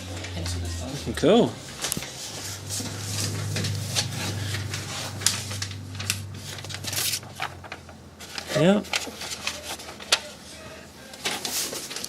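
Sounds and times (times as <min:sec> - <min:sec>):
steady low hum: 0:00.0 - 0:09.0
rubbing and scraping: 0:00.2 - 0:10.2.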